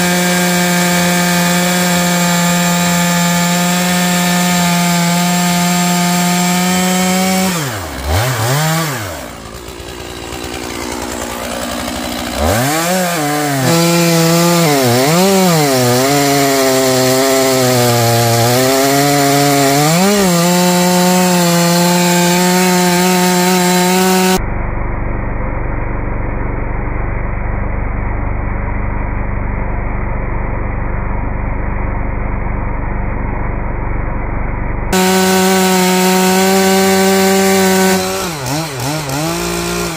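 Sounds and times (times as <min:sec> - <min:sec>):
chainsaw cutting logs: 0:00.0 - 0:24.4, 0:34.9 - 0:39.9.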